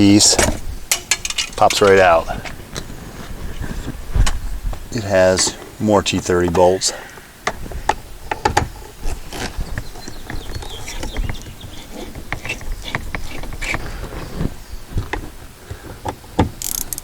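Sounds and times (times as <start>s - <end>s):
hand tools clicking and rattling: 0.9s - 2.4s, 7.5s - 13.9s.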